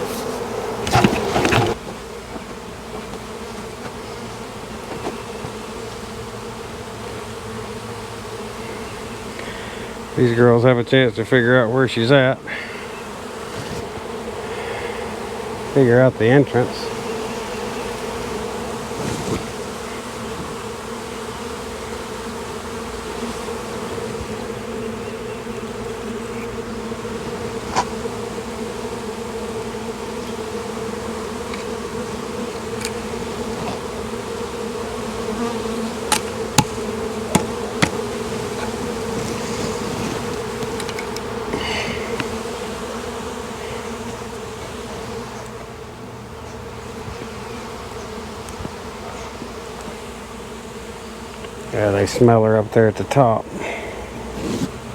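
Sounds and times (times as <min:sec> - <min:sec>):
bee swarm buzzing: 0:00.0 - 0:54.9.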